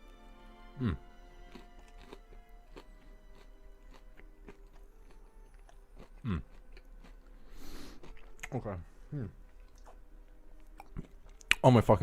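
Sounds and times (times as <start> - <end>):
chewing crunches: 1.0 - 8.8, 9.5 - 10.0, 10.6 - 11.7.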